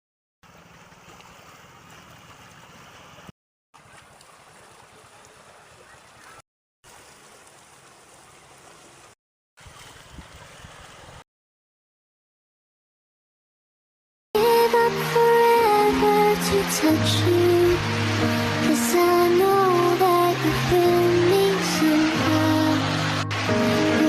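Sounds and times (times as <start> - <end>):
sea waves washing: 14.4 - 24.0.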